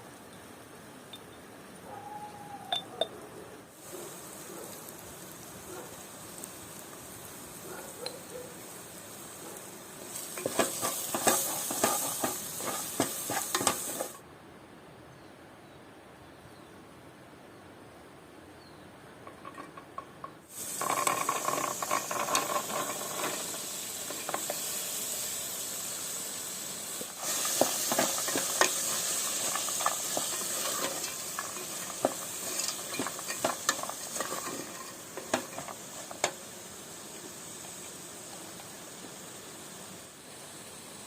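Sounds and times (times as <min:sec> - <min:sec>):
food sizzling in hot oil: 0:03.7 - 0:14.2, 0:20.4 - 0:41.0.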